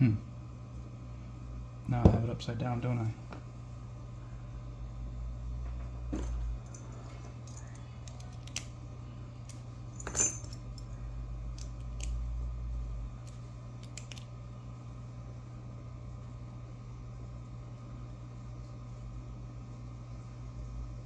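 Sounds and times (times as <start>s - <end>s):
padlock parts clicking: 7.5s - 8.7s, 11.5s - 12.2s, 13.2s - 14.3s.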